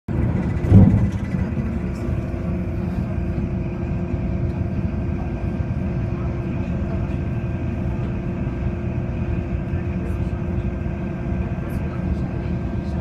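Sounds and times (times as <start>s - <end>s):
train rumbling: 0.1s - 13.0s
low thump: 0.6s - 1.4s.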